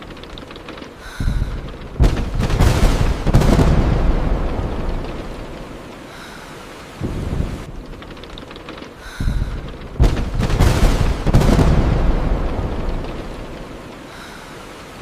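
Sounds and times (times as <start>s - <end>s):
steady rain: 0.0s - 15.0s
thunder rumbling: 0.0s - 15.0s
thunder crack: 1.2s - 5.9s, 7.0s - 8.3s, 9.2s - 14.3s.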